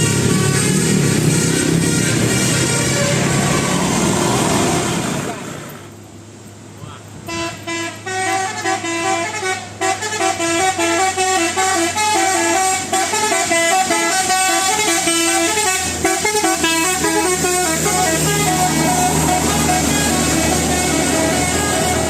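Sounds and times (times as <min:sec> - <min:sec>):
bus horn melody: 0:00.0 - 0:05.2, 0:07.2 - 0:22.0.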